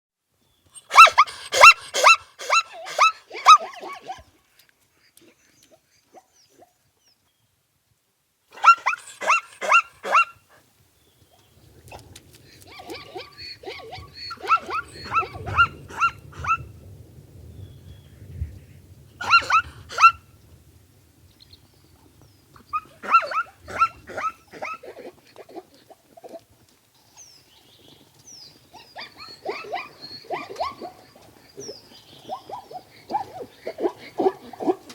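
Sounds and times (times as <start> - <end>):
dog yapping: 0.8 - 4.3, 8.6 - 10.4, 12.7 - 16.6, 19.2 - 20.2, 22.7 - 25.6, 28.8 - 31.0.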